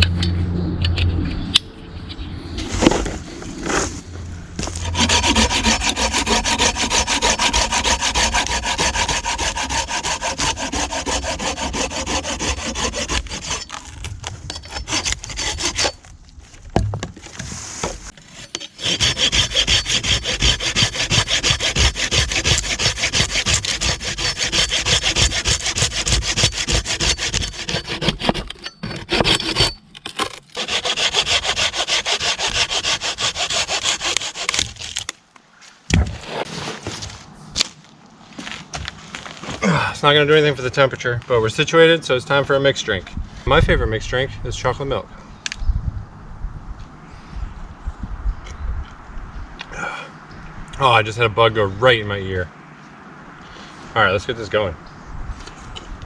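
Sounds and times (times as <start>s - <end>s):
hand saw cutting wood: 4.6s - 16.1s, 18.2s - 35.1s.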